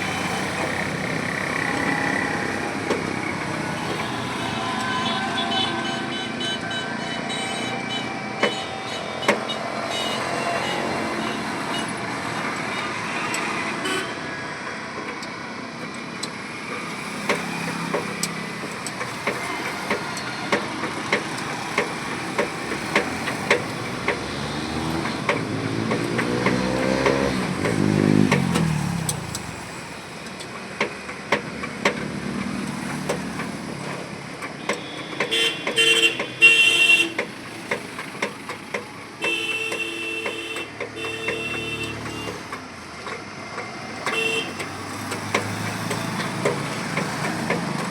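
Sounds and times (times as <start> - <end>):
car horns honking: 3.6 - 12.0, 12.7 - 14.3, 34.6 - 37.5, 39.2 - 42.7, 44.0 - 44.9
vehicle passing: 21.5 - 30.0.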